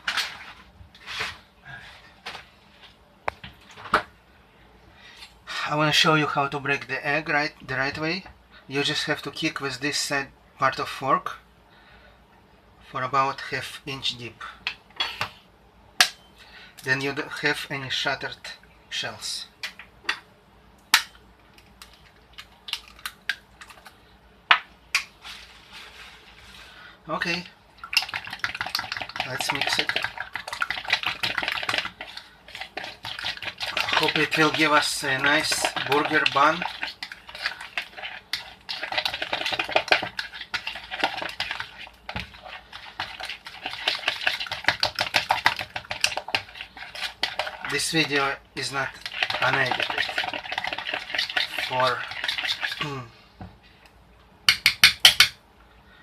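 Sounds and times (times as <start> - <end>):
batter beaten in bowl: 27.2 - 53.0, 54.5 - 55.4
fork tapping eggshells: 28.0 - 47.8, 54.5 - 55.4.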